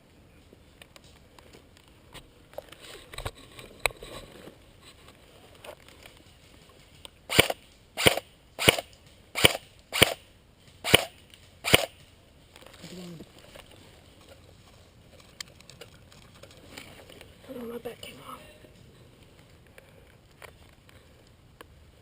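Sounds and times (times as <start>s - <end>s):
quiet clicks and rustling: 0.1s - 7.9s, 10.6s - 21.8s
airsoft rifle single shots: 7.3s - 10.2s, 10.8s - 12.0s.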